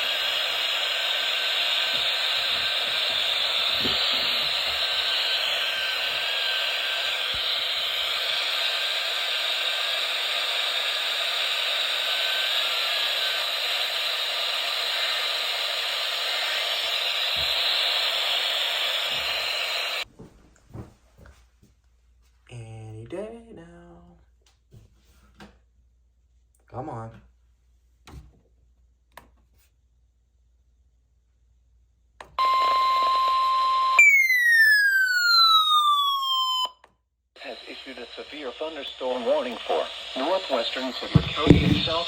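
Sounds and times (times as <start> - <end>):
radio static hiss: 0.0 - 20.0, 37.4 - 42.0.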